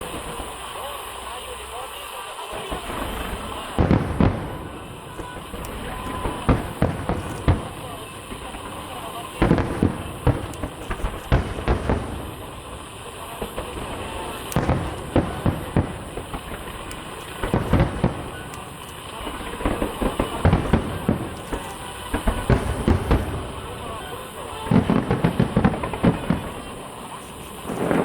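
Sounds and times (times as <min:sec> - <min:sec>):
fireworks bangs and crackles: 0:00.0 - 0:28.0.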